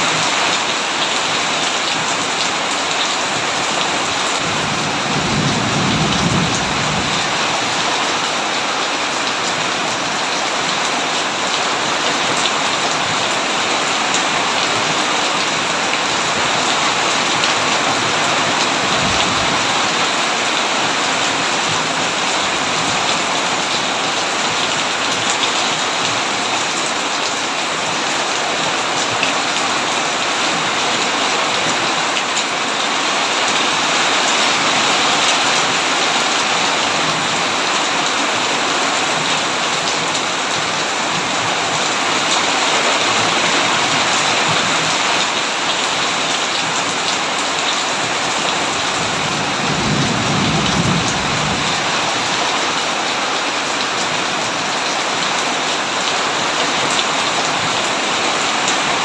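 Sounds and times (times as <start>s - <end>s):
heavy rain on a tin roof: 0.0s - 59.0s
thunder rumbling: 4.4s - 7.9s, 18.0s - 20.0s, 49.0s - 52.3s.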